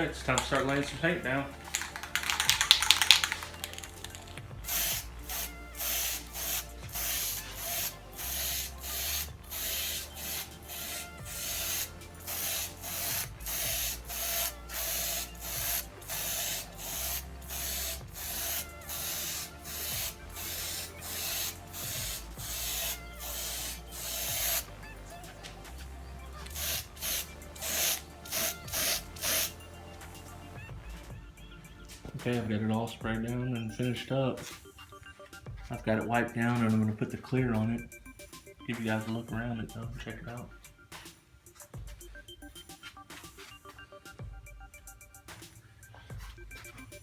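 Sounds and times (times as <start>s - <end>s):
aerosol spray can hissing: 0.3s - 30.6s.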